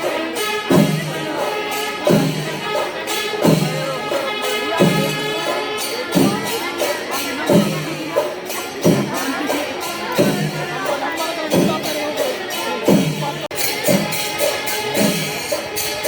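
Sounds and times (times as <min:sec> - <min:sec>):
heavy drum strokes: 0:00.0 - 0:16.0
wind instrument melody: 0:00.0 - 0:16.0
cymbal strokes: 0:12.9 - 0:16.0.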